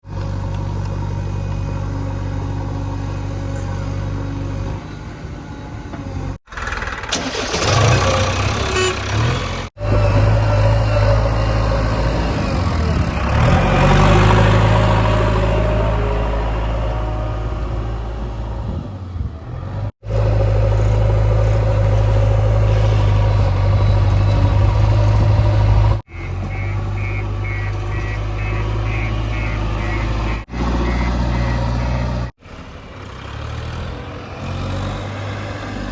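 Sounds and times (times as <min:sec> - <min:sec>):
backhoe diesel engine working: 0:00.0 - 0:35.9
reversing alarm beeping: 0:26.1 - 0:32.3.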